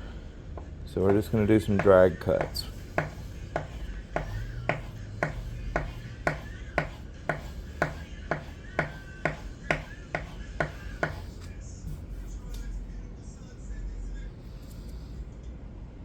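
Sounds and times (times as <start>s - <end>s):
knife blade scraping on wood: 0.6s - 12.1s.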